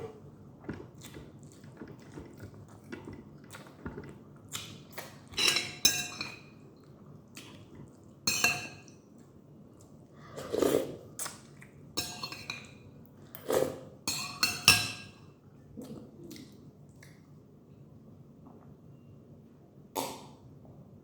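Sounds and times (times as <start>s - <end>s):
dishes and cutlery clinking: 5.3s - 6.5s, 8.3s - 8.9s, 12.0s - 12.8s, 14.1s - 15.2s.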